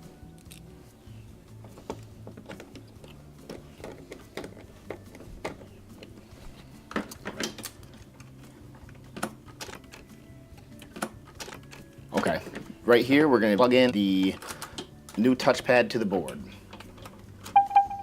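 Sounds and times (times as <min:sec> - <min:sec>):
plastic parts being handled: 0:01.5 - 0:12.8.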